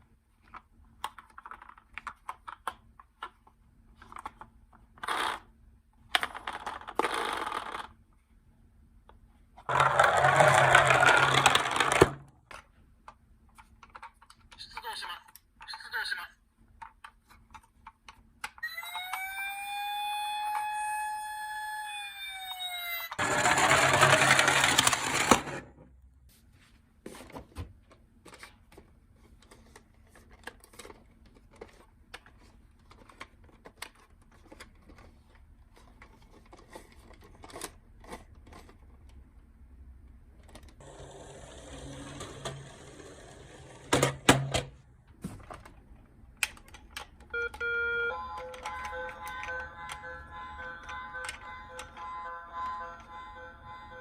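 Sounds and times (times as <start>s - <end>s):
toy electronic siren wail: 18.6s - 23.2s, 47.4s - 54.0s.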